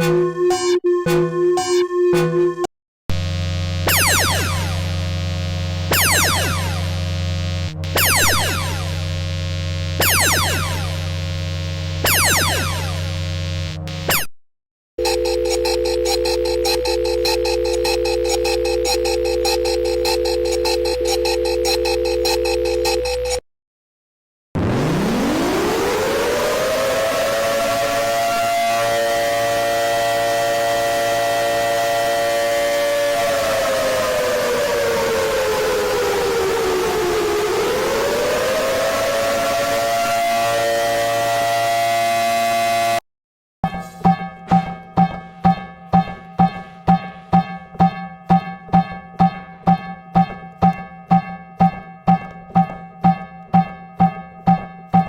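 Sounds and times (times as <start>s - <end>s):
warning siren: 0.0s - 14.2s, 15.0s - 23.4s, 24.6s - 43.0s.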